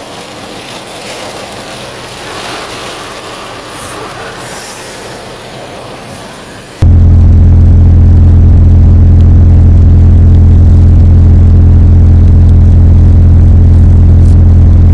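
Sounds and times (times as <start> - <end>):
loud steady low hum: 6.8 - 14.9.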